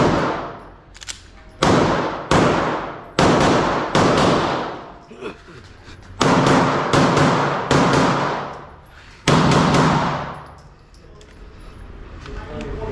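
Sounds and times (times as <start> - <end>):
pistol shots echoing: 0.0 - 0.9, 1.5 - 5.0, 6.2 - 8.6, 9.2 - 10.5.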